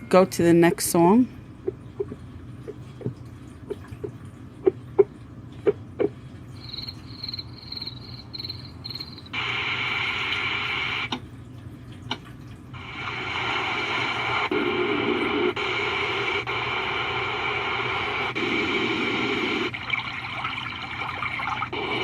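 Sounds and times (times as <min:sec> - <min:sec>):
recorded cricket chirps: 0:06.6 - 0:09.6
white noise hiss: 0:08.3 - 0:11.2, 0:12.8 - 0:22.0.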